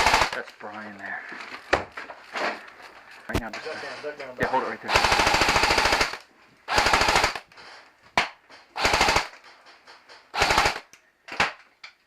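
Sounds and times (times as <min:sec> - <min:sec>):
airsoft gun firing bursts: 0:00.0 - 0:00.4, 0:04.9 - 0:07.5, 0:08.8 - 0:09.4, 0:10.4 - 0:10.9.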